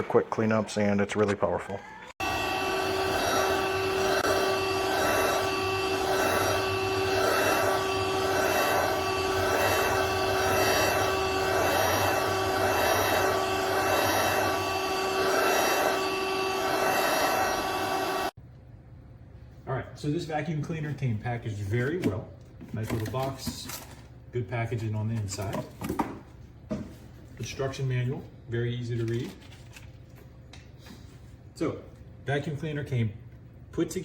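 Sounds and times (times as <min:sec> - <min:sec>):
handheld vacuum cleaner whine: 0:01.8 - 0:18.4.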